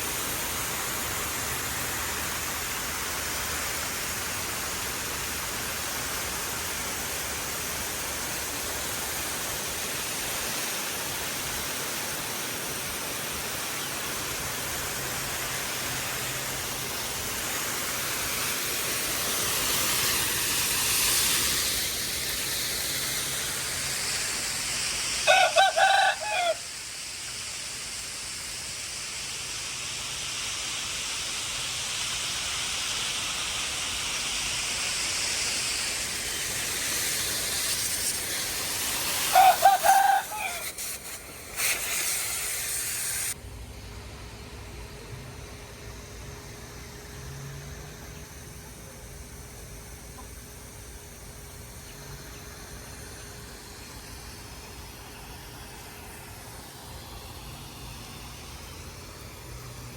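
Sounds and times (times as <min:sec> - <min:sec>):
water spraying from garden hose: 0:00.0 - 0:59.9
rooster crowing: 0:25.2 - 0:26.8, 0:39.2 - 0:41.0.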